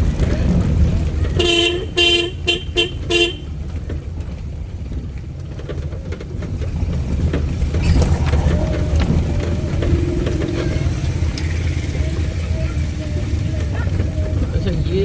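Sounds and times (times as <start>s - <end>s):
vehicle driving rumble: 0.0s - 15.0s
vehicle horn honking: 1.4s - 3.5s.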